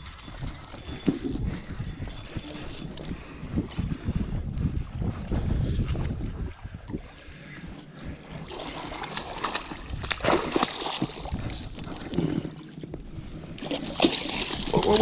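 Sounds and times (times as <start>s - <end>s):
water sloshing and splashing: 5.2s - 15.0s.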